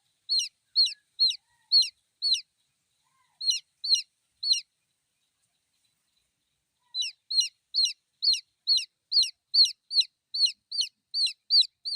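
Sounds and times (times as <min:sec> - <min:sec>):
chick peeping: 0:00.3 - 0:02.4, 0:03.4 - 0:04.6, 0:07.0 - 0:11.9.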